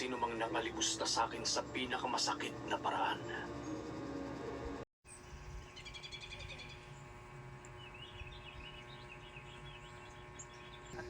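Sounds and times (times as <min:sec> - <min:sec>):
steady electrical hum: 0:00.0 - 0:11.0
faint bird chirping: 0:05.1 - 0:11.0.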